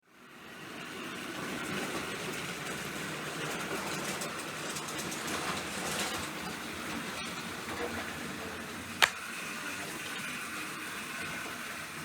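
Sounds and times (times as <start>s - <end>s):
wheels on rails: 0.6s - 9.2s.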